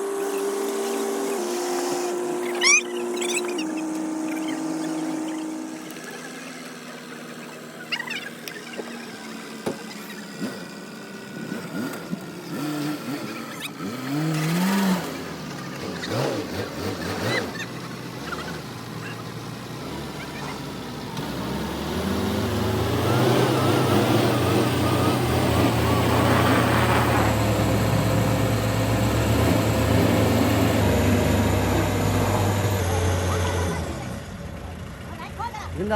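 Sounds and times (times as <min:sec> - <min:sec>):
rising and falling tones: 0:00.0 - 0:09.3, 0:21.8 - 0:33.1
engine running and revving: 0:00.0 - 0:35.9.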